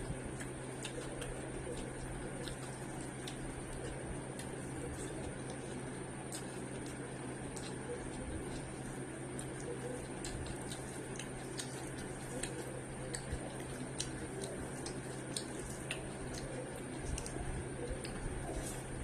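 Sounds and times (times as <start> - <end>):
low hum: 0.0 - 19.0
wet chewing mouth clicks: 0.0 - 19.0.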